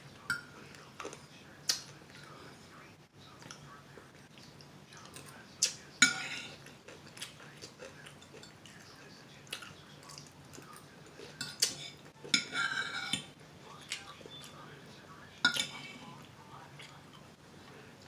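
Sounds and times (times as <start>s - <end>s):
cutlery and dishes clinking: 5.0s - 9.0s, 9.6s - 13.3s, 15.4s - 16.1s.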